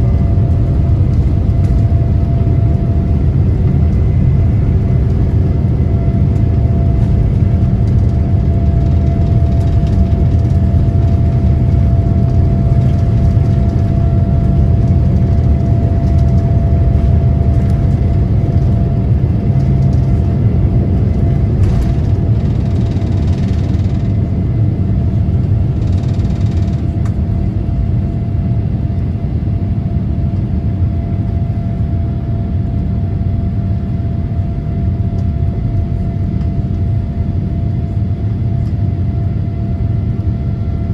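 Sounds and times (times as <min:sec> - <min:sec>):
jet engine rumble in cabin: 0:00.0 - 0:40.9
thin steady engine whine: 0:00.0 - 0:40.9.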